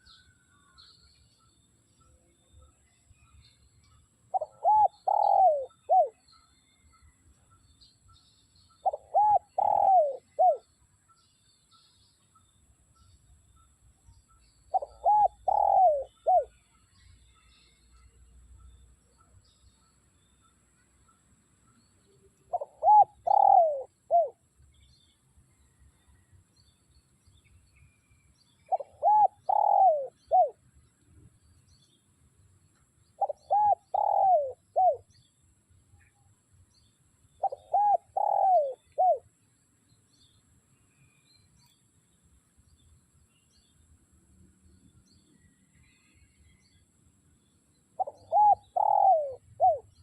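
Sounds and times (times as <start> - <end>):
dove cooing: 4.3 - 6.2, 8.8 - 10.7, 14.7 - 16.6, 22.5 - 24.4, 28.7 - 30.6, 33.2 - 35.1, 37.4 - 39.2, 48.0 - 49.9.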